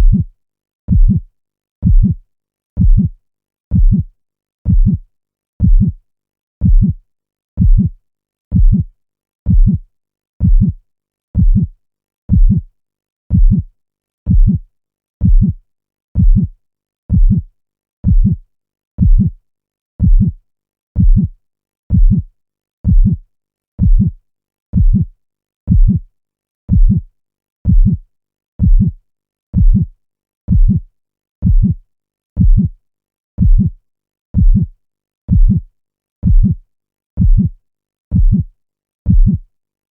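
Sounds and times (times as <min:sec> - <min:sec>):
slow heartbeat: 0:00.0 - 0:00.3, 0:00.9 - 0:01.2, 0:01.8 - 0:02.2, 0:02.8 - 0:03.1, 0:03.7 - 0:04.1, 0:04.7 - 0:05.0, 0:05.6 - 0:06.0, 0:06.6 - 0:07.0, 0:07.6 - 0:08.9, 0:09.5 - 0:09.8, 0:10.4 - 0:10.8, 0:11.4 - 0:11.7, 0:12.3 - 0:12.6, 0:13.3 - 0:13.7, 0:14.3 - 0:14.6, 0:15.2 - 0:15.6, 0:16.2 - 0:16.5, 0:17.1 - 0:18.4, 0:19.0 - 0:19.4, 0:20.0 - 0:20.4, 0:21.0 - 0:21.3, 0:21.9 - 0:22.3, 0:22.9 - 0:23.2, 0:23.8 - 0:24.2, 0:24.8 - 0:25.1, 0:25.7 - 0:26.0, 0:26.7 - 0:27.0, 0:27.7 - 0:28.0, 0:28.6 - 0:29.0, 0:29.6 - 0:29.9, 0:30.5 - 0:30.8, 0:31.4 - 0:31.8, 0:32.4 - 0:32.8, 0:33.4 - 0:33.8, 0:34.4 - 0:34.7, 0:35.3 - 0:35.6, 0:36.2 - 0:36.6, 0:37.2 - 0:37.5, 0:38.1 - 0:38.5, 0:39.1 - 0:39.4.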